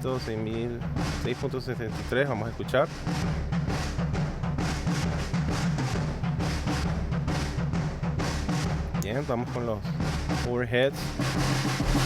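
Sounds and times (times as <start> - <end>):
drum kit playing a beat: 0.0 - 12.0.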